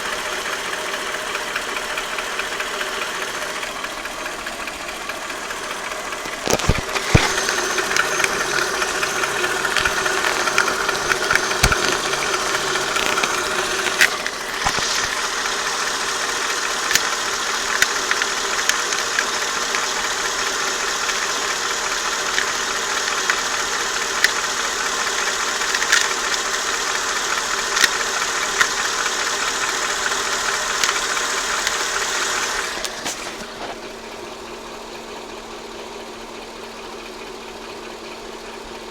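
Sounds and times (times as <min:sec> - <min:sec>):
car engine running: 0:00.0 - 0:38.9
engine knock: 0:00.0 - 0:38.9
sharp clicks: 0:05.6 - 0:20.1, 0:20.7 - 0:33.6.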